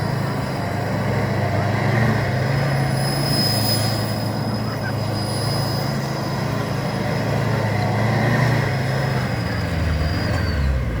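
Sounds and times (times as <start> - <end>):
diesel engine running: 0.0 - 11.0
high-pitched exhaust whistle: 2.6 - 7.0.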